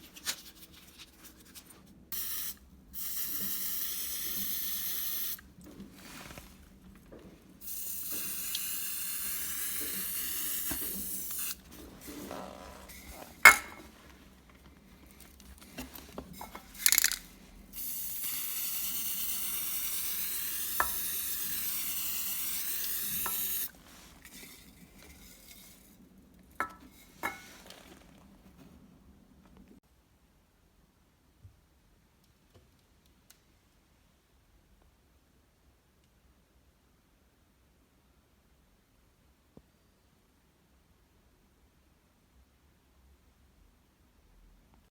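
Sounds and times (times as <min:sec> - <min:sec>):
aerosol spray can hissing: 0:02.2 - 0:05.4, 0:07.6 - 0:13.9, 0:16.4 - 0:25.7.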